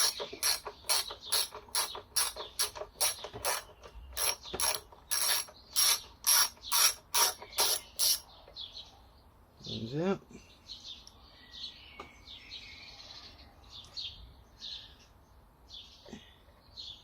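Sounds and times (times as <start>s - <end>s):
ratchet wrench clicking: 0.0s - 8.2s.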